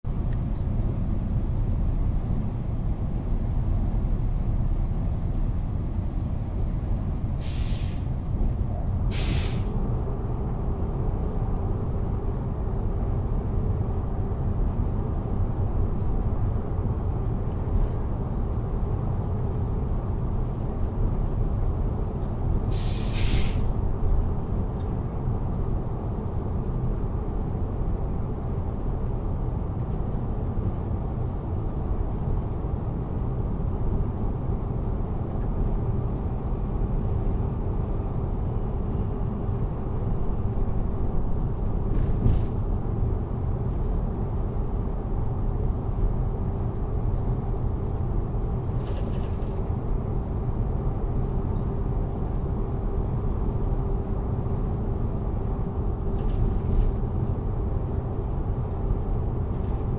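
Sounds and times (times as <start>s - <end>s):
train rumbling: 0.1s - 59.9s
short hisses: 7.4s - 8.1s, 9.1s - 9.8s, 22.7s - 23.7s.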